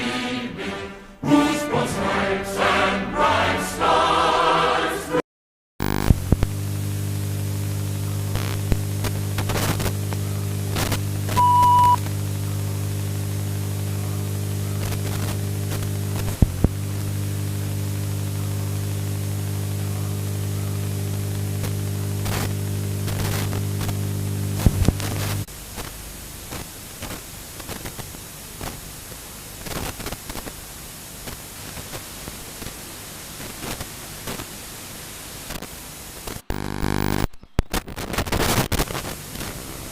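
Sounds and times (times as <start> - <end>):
static hiss: 5.8 - 39.9
low buzzing drone: 6.2 - 25.5
short high beep: 11.4 - 12.0.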